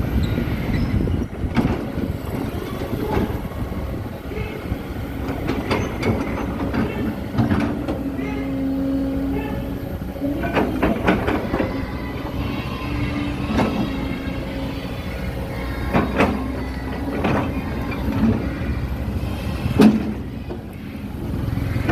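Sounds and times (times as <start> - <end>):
excavator running: 0.0 - 21.9
held whine: 0.0 - 21.9.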